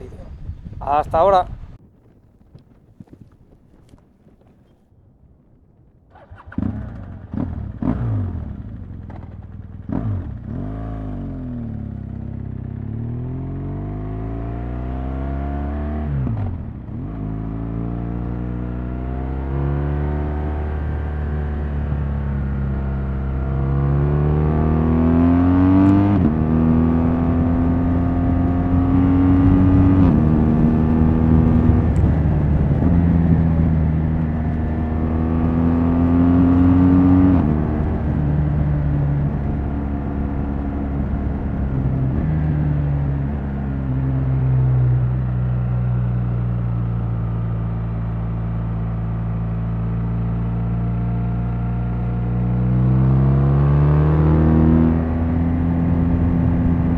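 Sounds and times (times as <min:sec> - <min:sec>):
motorcycle engine revving under load: 0:06.1 - 0:56.9.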